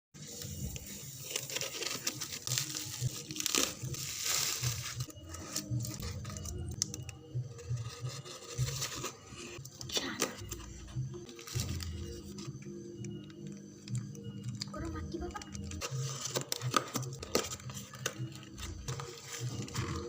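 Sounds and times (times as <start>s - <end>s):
packaging tearing and crinkling: 0.9s - 6.0s.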